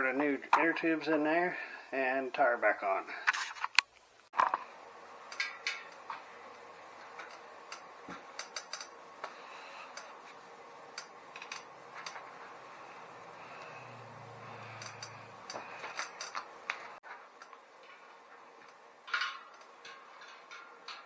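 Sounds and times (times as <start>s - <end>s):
light clicks from fitting a tyre: 14.6s - 16.8s.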